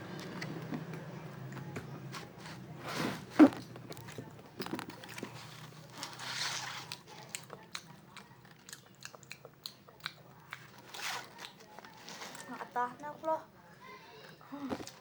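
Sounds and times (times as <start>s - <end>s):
wet chewing mouth clicks: 6.9s - 11.6s.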